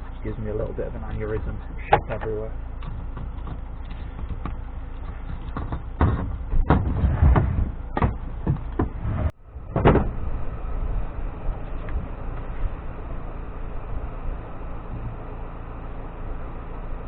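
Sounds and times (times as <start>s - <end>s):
camping gear knocking and clunking: 0.0s - 9.0s
steady low rumble: 0.0s - 17.0s.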